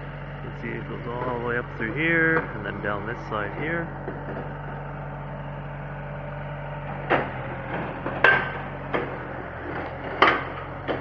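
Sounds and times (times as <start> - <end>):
steady engine hum: 0.0 - 11.0
sharp knocks of pile driving: 6.9 - 11.0.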